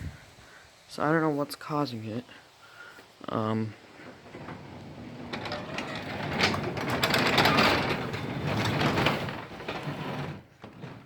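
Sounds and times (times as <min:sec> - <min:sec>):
garage door rumbling and rattling: 0:04.0 - 0:11.0
door sticking and rubbing: 0:04.1 - 0:11.0.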